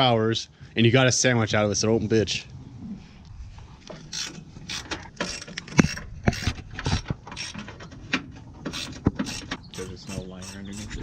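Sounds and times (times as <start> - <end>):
metal parts clicking and clanking: 3.9 - 11.0.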